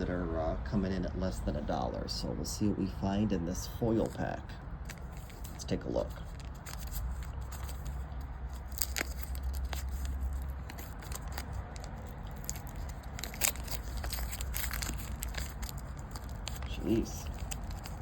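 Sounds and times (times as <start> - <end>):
foil wrapper crinkling and tearing: 4.8 - 18.0.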